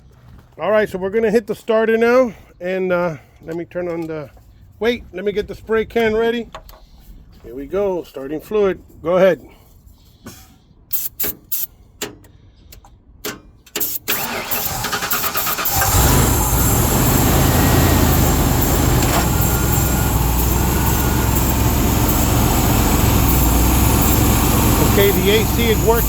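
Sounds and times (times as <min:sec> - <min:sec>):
truck engine cranking and starting: 0:13.3 - 0:26.0
engine running steadily: 0:13.8 - 0:26.0.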